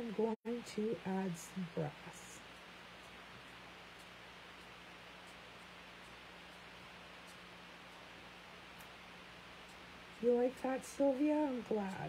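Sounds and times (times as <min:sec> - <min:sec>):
background hiss: 0:00.0 - 0:12.0
faint low hum: 0:00.0 - 0:12.0
very faint ticks: 0:02.2 - 0:08.2, 0:09.6 - 0:12.0.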